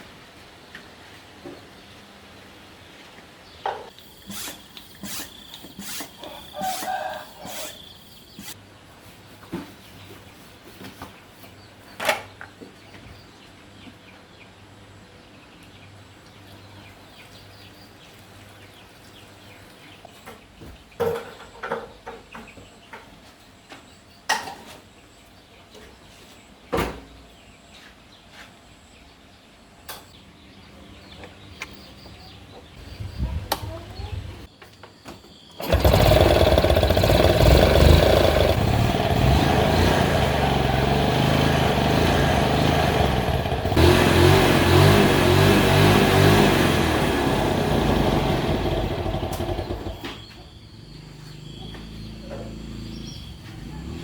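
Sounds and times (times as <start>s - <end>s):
motorcycle engine running loudly: 35.6s - 54.0s.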